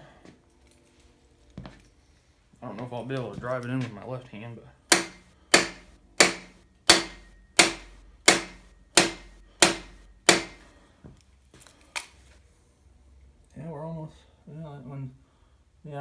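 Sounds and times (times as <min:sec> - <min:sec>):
hammer striking metal: 0:04.9 - 0:10.8.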